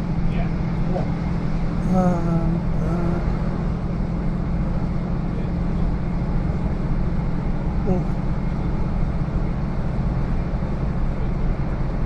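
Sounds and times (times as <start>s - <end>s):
train drone and rumble: 0.0s - 12.0s
person's voice: 1.8s - 3.4s, 7.9s - 8.2s.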